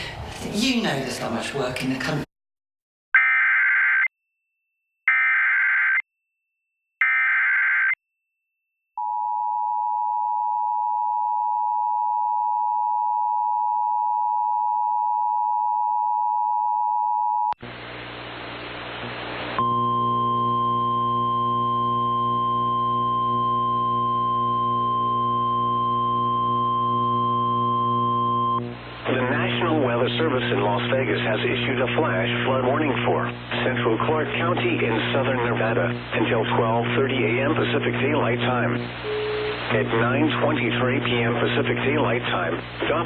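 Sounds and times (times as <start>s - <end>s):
steady electronic hum: 17.6s - 43.0s.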